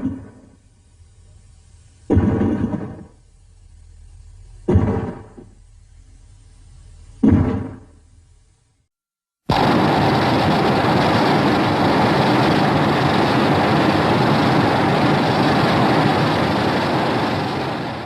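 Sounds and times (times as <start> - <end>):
loud rushing rumble: 9.5 - 18.0.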